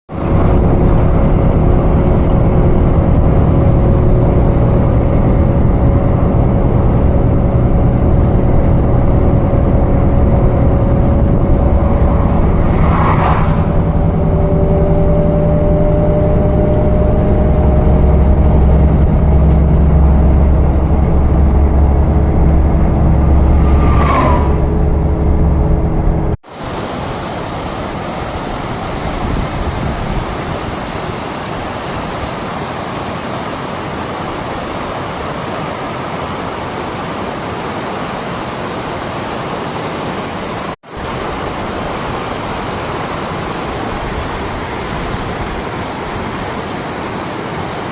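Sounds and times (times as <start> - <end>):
vehicle engine and road noise: 0.1 - 47.9
waterfall rushing: 26.5 - 47.9.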